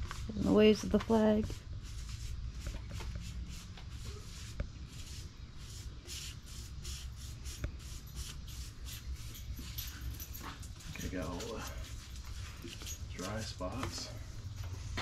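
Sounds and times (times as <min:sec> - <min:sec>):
brush rubbing on wood: 0:00.3 - 0:09.8.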